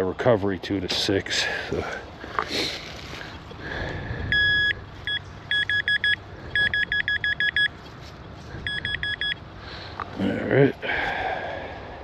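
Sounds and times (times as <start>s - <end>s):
metal detector beeping: 4.3s - 7.8s, 8.6s - 9.4s.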